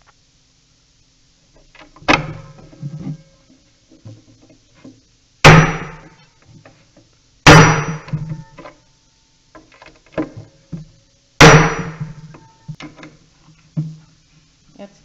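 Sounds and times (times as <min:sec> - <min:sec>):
hammer striking impact driver: 0:05.5 - 0:06.1, 0:07.5 - 0:08.2, 0:11.4 - 0:12.1.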